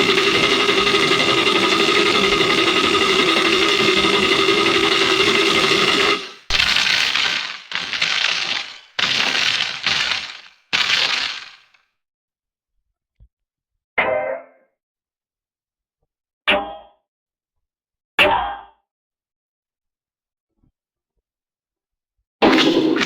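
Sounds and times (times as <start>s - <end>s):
steady buzzing tone: 0.0s - 11.6s.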